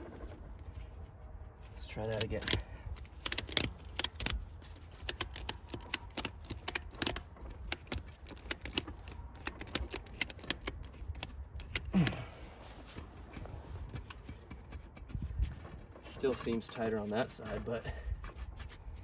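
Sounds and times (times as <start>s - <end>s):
ratchet strap clicking: 2.0s - 12.2s.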